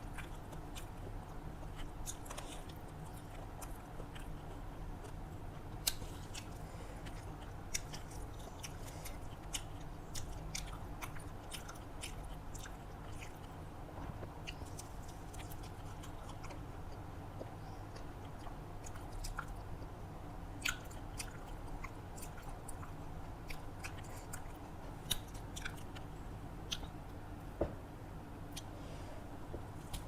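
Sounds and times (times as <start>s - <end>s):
person chewing food: 0.0s - 20.0s, 20.6s - 27.1s
low background noise: 0.0s - 30.0s.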